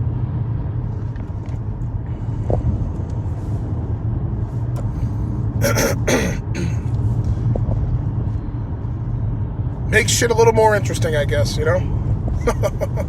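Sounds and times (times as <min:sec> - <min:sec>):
car engine rumbling: 0:00.0 - 0:13.0
person coughing: 0:05.6 - 0:06.9.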